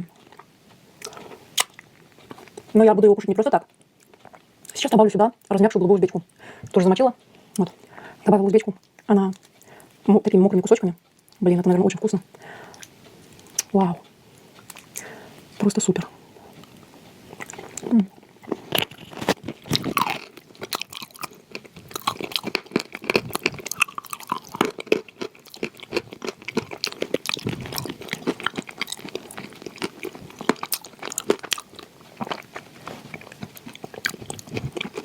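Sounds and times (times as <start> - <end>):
chewing and crunching clay: 17.3 - 35.0.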